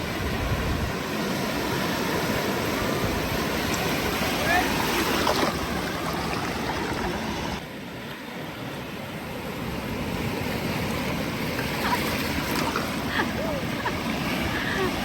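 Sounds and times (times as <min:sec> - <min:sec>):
ocean surf breaking: 0:00.0 - 0:15.0.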